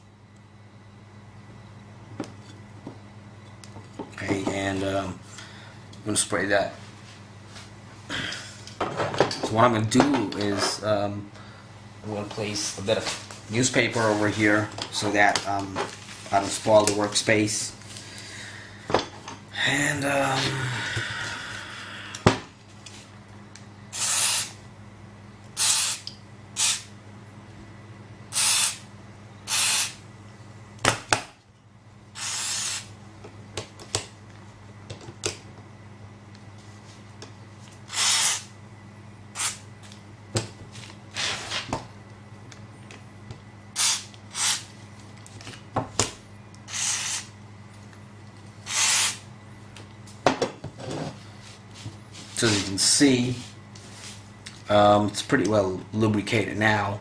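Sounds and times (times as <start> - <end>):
aerosol spray hissing bursts: 24.0 - 24.6, 25.6 - 26.0, 26.6 - 26.9, 28.3 - 28.8, 29.5 - 30.0, 32.2 - 32.9, 37.9 - 38.5, 39.4 - 39.6, 43.8 - 44.7, 46.7 - 47.3, 48.7 - 49.2.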